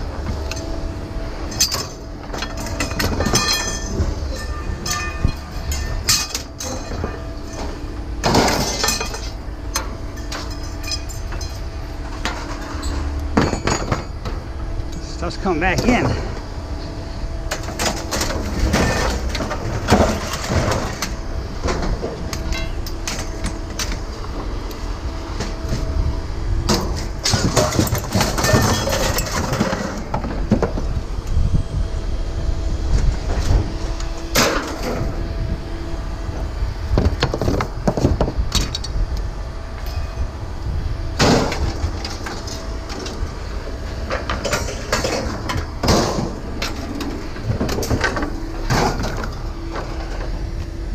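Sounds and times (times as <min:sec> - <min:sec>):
faint hum: 0:00.0 - 0:50.9
machinery rumbling: 0:00.0 - 0:50.9
scrap metal clanking: 0:01.5 - 0:14.4, 0:17.5 - 0:24.0, 0:26.7 - 0:30.8, 0:43.9 - 0:50.3.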